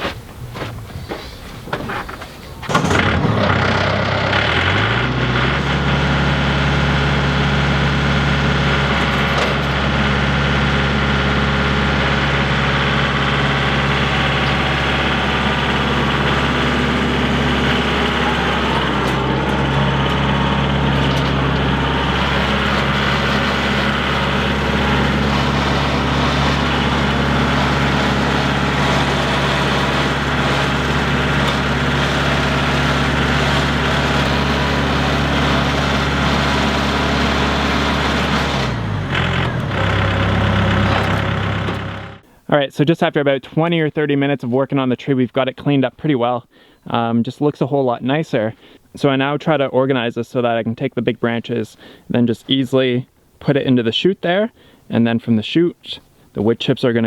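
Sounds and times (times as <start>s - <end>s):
engine starting and running: 0.6s - 42.4s.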